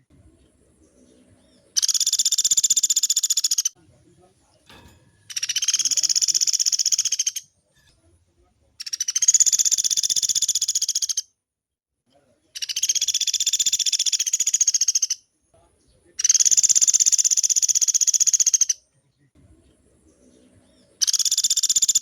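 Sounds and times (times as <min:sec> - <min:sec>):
woodpecker rattling calls: 0:00.8 - 0:03.8, 0:05.3 - 0:07.5, 0:08.8 - 0:11.2, 0:12.6 - 0:15.2, 0:16.2 - 0:18.8, 0:20.9 - 0:22.0.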